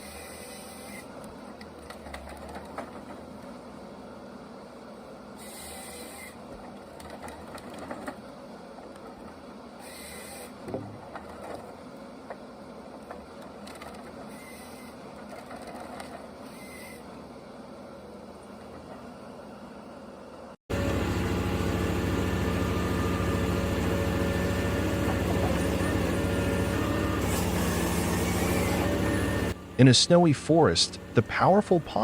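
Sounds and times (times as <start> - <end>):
forestry machine din: 20.7 - 32.0.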